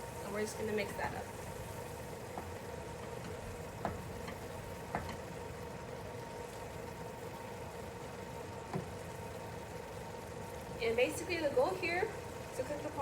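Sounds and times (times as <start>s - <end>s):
sauce sizzling in a pan: 0.0s - 13.0s
spoon knocking against a pan: 3.8s - 5.2s.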